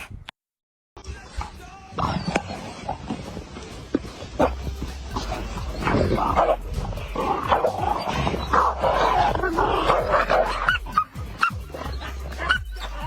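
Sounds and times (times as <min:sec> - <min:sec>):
music playing: 0:01.0 - 0:13.0
dog barking and yelping: 0:04.3 - 0:13.0.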